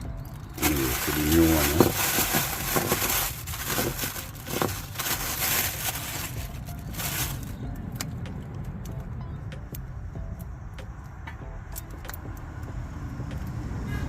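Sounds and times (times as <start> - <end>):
packaging rustling and crackling: 0.4 - 7.6.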